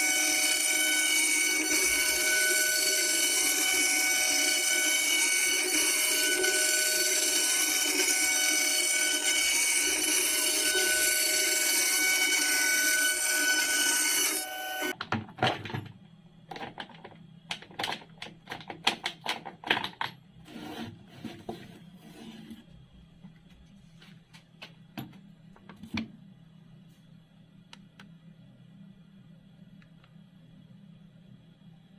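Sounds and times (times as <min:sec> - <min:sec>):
electric power tool whining: 0:00.0 - 0:15.0.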